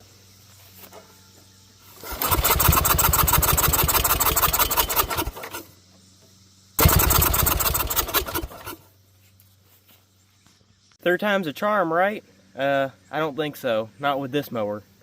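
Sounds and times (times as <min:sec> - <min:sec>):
small lawnmower engine sputtering: 0:01.9 - 0:05.8, 0:06.8 - 0:08.9.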